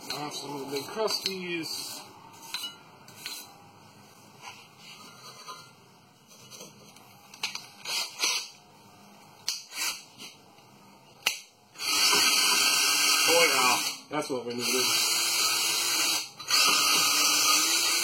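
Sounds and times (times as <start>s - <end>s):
metal-on-metal scraping: 0.0s - 3.6s, 4.4s - 7.0s
loud power tool: 11.8s - 18.0s.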